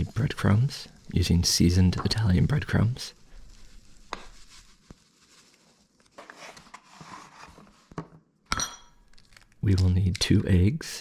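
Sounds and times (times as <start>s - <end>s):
crumbs rustling: 0.0s - 8.0s.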